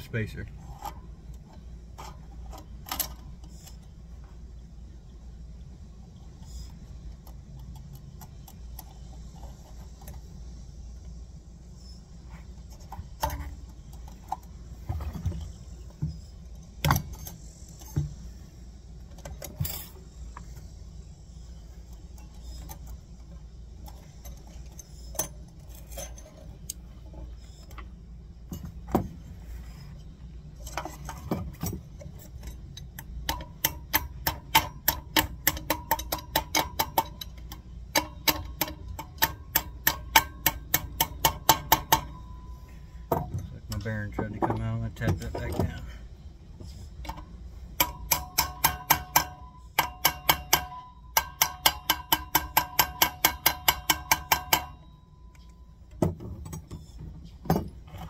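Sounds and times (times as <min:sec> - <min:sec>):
hammer striking steel bearing: 0:37.9 - 0:42.3, 0:47.8 - 0:55.0.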